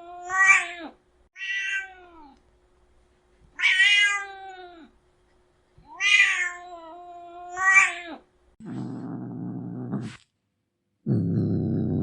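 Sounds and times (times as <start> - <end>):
cat meowing: 0.1 - 2.3, 3.6 - 4.9.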